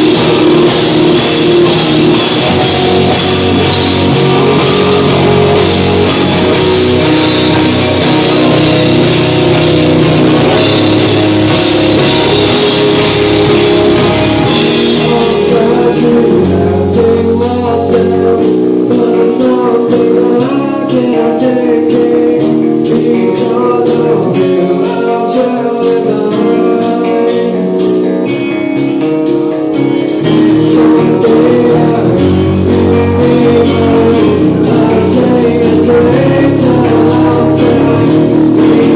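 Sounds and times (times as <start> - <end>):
rock band playing live: 0.0 - 38.9.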